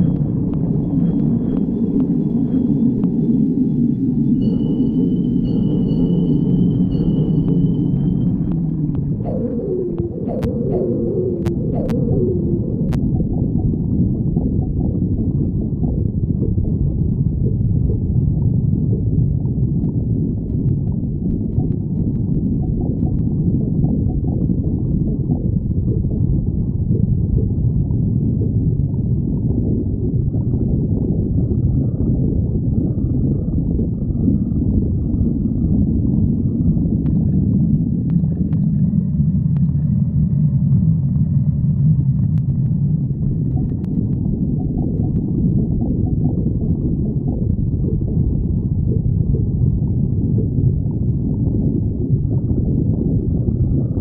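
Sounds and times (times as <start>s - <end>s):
faint high-pitched squeal: 4.3s - 8.6s
stomach growling: 7.5s - 54.0s.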